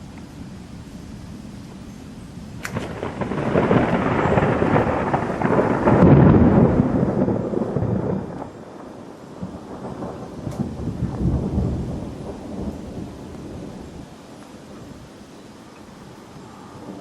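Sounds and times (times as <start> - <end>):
thunder crack and rumble: 2.5 - 14.1.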